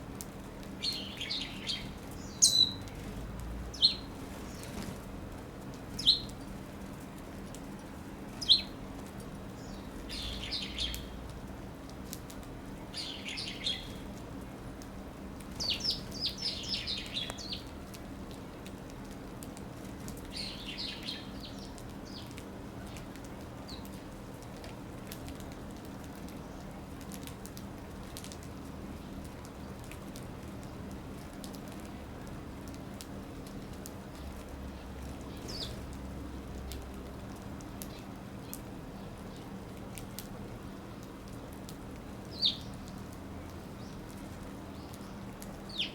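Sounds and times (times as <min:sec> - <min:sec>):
sparrows chirping: 0:00.8 - 0:05.0, 0:05.9 - 0:06.7, 0:07.8 - 0:08.8, 0:09.6 - 0:11.3, 0:12.8 - 0:14.1, 0:15.5 - 0:17.7, 0:20.2 - 0:24.0, 0:34.1 - 0:36.0, 0:42.3 - 0:45.9.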